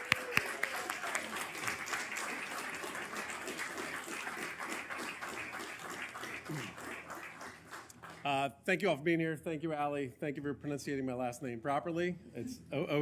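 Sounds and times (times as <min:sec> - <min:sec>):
people clapping: 0:00.0 - 0:08.4.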